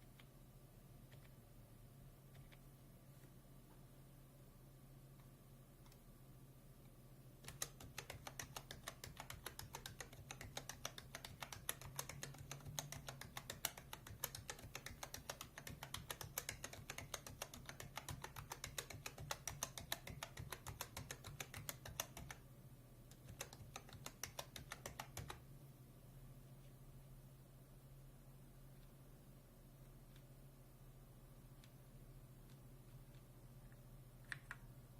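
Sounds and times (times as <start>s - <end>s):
typing on mechanical keyboard: 7.4s - 22.4s, 23.1s - 25.4s.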